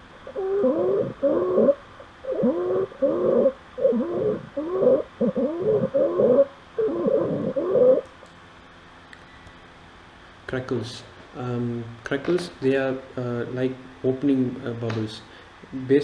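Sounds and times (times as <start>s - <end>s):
noisy pitched breathing: 0.0s - 8.0s.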